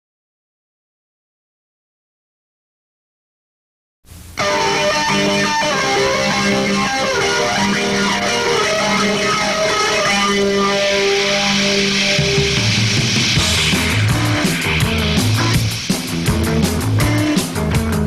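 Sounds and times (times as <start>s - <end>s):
electric guitar: 4.3s - 18.0s
rock band playing: 4.4s - 18.0s.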